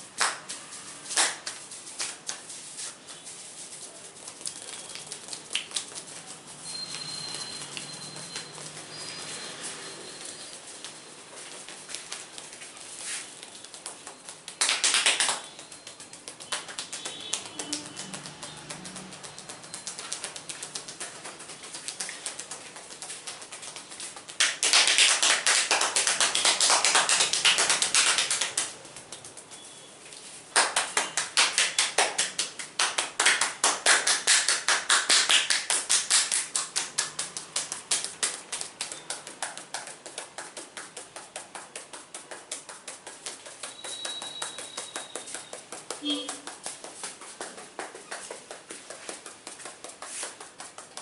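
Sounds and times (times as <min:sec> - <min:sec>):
hands tapping on head: 0:10.8 - 0:29.6, 0:30.6 - 0:51.0.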